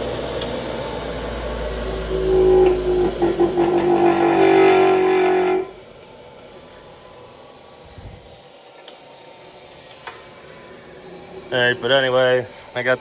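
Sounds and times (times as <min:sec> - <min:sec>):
bench grinder motor hum: 0:00.6 - 0:05.8.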